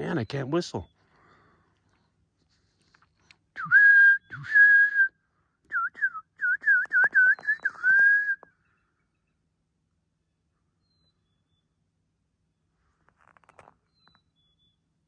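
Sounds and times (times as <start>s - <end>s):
man whistling: 3.6s - 8.5s.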